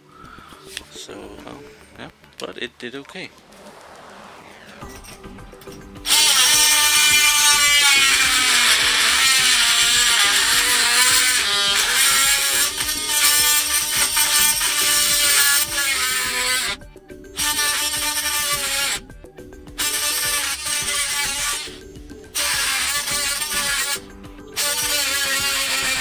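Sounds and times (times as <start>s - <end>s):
saw blade screeching on metal: 4.5s - 16.8s.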